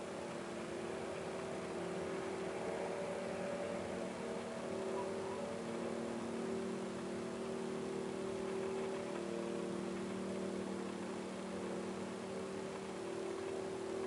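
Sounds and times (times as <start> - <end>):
constant hiss: 0.0 - 14.0
distant low drone: 0.0 - 14.0.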